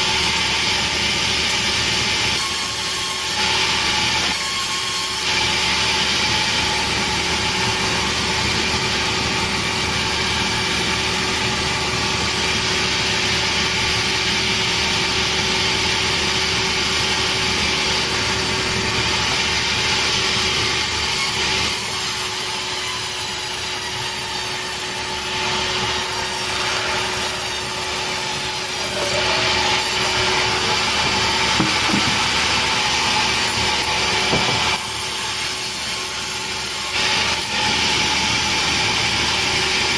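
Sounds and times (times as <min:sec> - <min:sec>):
sawmill saw cutting log: 0:00.0 - 0:39.9.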